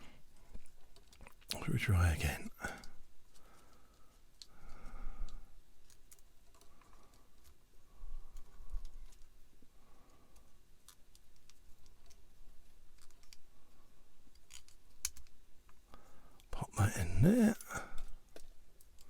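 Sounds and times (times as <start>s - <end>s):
plastic parts clicking: 14.3s - 15.3s.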